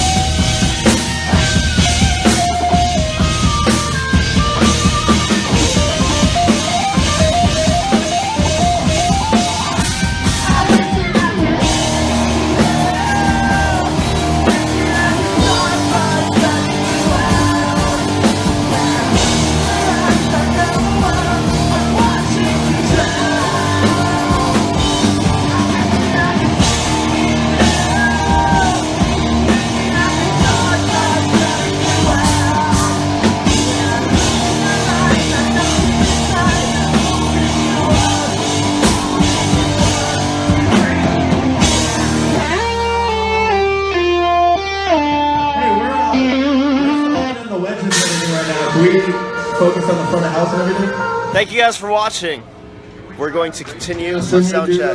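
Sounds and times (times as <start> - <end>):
electric guitar: 0.0 - 51.4
bass guitar: 0.0 - 51.5
drum kit: 0.0 - 52.4
person singing: 8.7 - 44.3.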